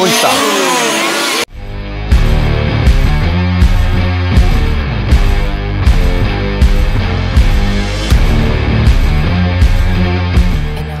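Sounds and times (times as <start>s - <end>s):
rock music with distorted guitar: 0.0s - 11.0s
drum hits: 2.1s - 10.7s.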